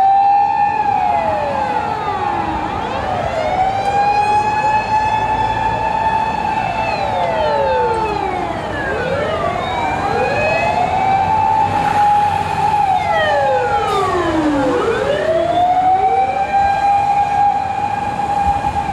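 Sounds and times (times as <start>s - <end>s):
fire engine wail sirens: 0.0s - 18.9s
trucks rumbling on road: 0.0s - 18.9s.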